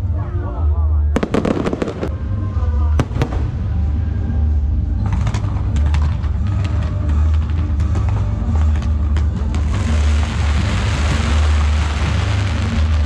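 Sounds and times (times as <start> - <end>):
heavy low rumble: 0.9 - 6.2
firework bangs: 1.2 - 2.2, 8.6 - 13.0.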